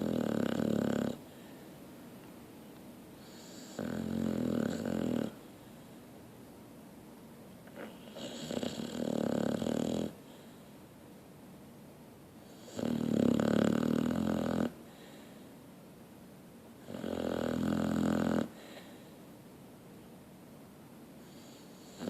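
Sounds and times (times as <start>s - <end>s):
slow snoring: 0.0s - 1.2s, 3.2s - 5.4s, 7.8s - 10.2s, 12.5s - 14.8s, 16.8s - 18.6s.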